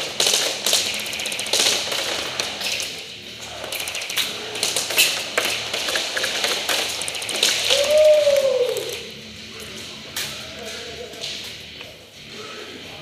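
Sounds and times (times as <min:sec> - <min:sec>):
airsoft guns firing: 0:00.0 - 0:09.0.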